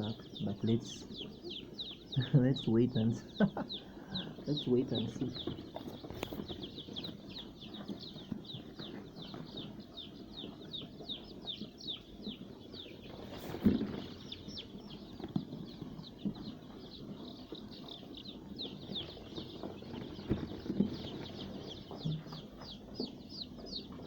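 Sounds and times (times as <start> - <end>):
chicks peeping: 0.0 - 24.0
rustling: 4.9 - 24.0.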